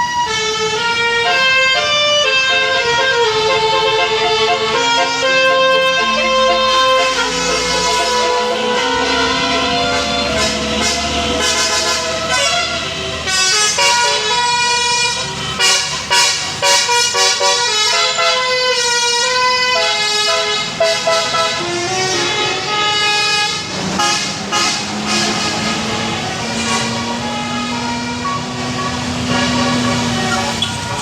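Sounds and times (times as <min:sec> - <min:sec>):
musical air horns playing a tune: 0:00.0 - 0:31.0.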